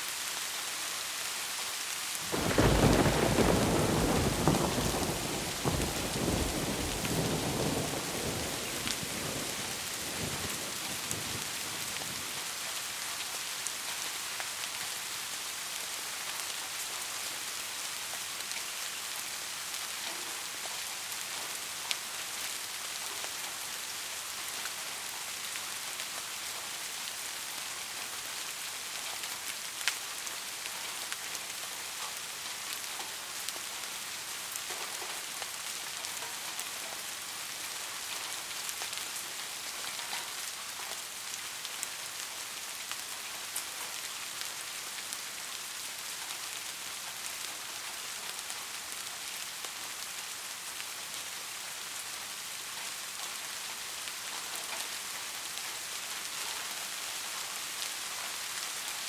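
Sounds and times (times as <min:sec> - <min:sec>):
heavy rain hissing: 0:00.0 - 0:59.0
thunderclap rumbling: 0:02.3 - 0:11.9.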